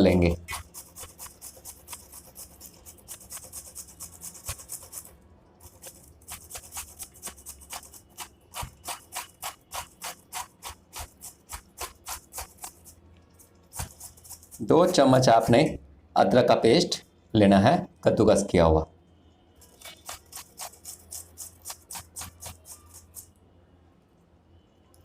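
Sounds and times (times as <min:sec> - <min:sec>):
ginger rasping on a grater: 0:00.0 - 0:15.3, 0:19.6 - 0:23.3.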